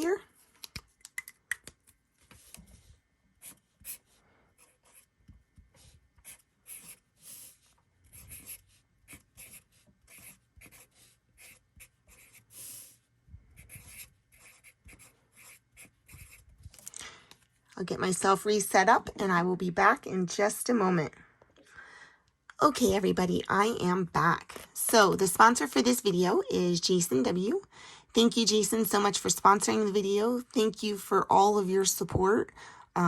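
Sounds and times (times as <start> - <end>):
handwriting on paper: 3.4 - 13.0, 13.6 - 16.5.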